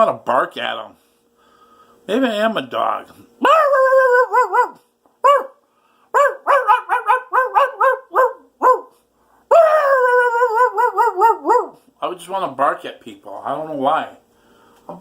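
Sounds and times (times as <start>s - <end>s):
dog-like barking and yipping: 3.4s - 9.0s, 9.9s - 11.9s.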